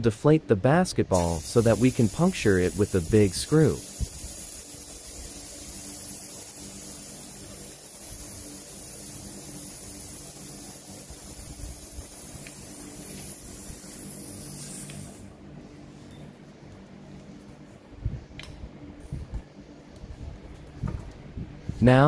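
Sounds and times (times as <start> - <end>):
air hissing out of a ball: 1.2 - 15.3.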